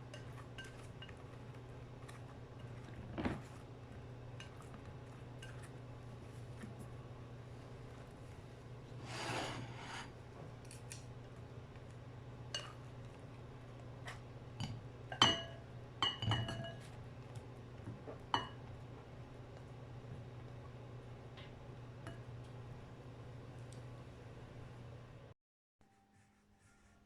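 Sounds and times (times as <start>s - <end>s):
dishes and glassware clinking: 14.6s - 16.9s.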